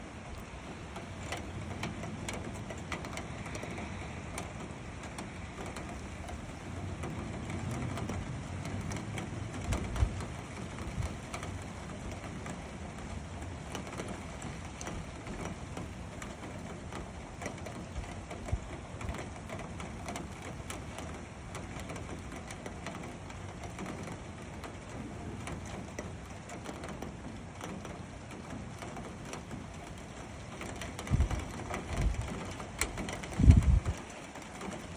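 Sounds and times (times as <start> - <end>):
rain hissing: 0.0 - 34.9
raindrops ticking: 0.0 - 34.9
low wind rumble: 29.2 - 34.9.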